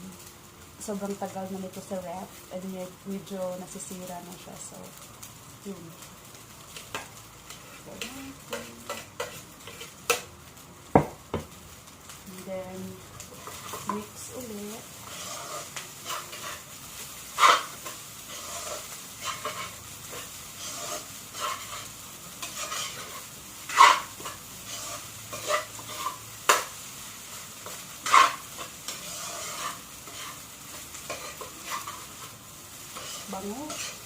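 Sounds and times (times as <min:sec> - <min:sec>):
fried rice sizzling in a pan: 0:00.0 - 0:34.0
utensil scraping a pan: 0:06.8 - 0:10.3, 0:15.0 - 0:16.7, 0:17.3 - 0:26.7, 0:27.6 - 0:34.0.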